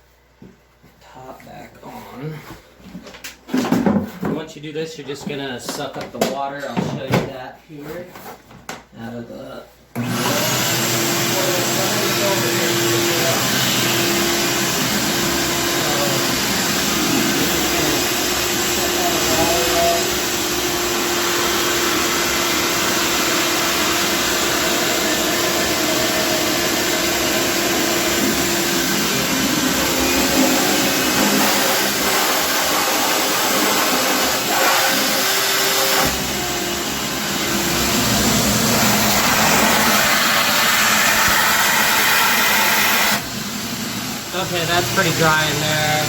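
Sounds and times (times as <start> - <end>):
shop vac motor whine: 9.9 - 46.0.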